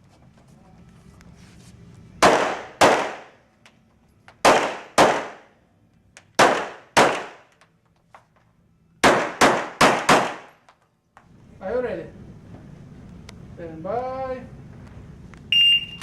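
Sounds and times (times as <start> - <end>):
handgun shots with echo: 2.2 - 3.4, 4.4 - 5.4, 6.4 - 7.5, 9.0 - 10.6.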